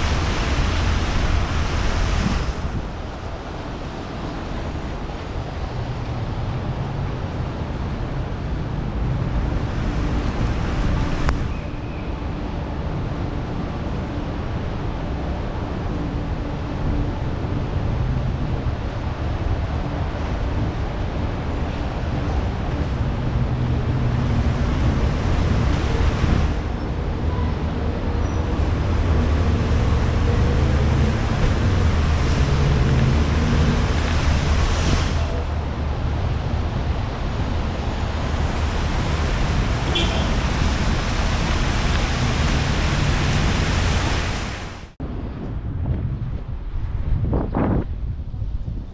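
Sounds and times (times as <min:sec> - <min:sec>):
wind rushing over microphone: 0:00.0 - 0:48.9
vehicle engines running: 0:12.1 - 0:45.8.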